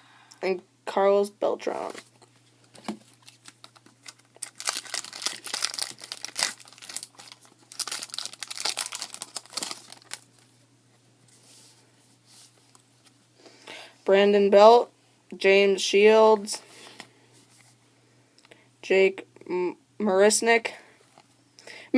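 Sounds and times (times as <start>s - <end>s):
plastic foil wrapper crinkling: 3.0s - 10.5s.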